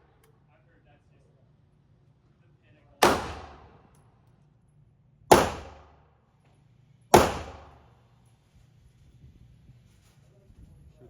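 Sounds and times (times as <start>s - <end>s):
gunshots echoing indoors: 3.0s - 3.9s, 5.3s - 6.0s.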